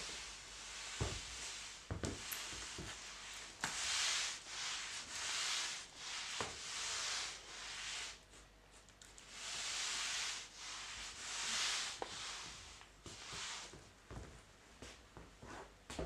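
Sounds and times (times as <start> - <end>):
mop swishing over hard floor: 0.0 - 16.0.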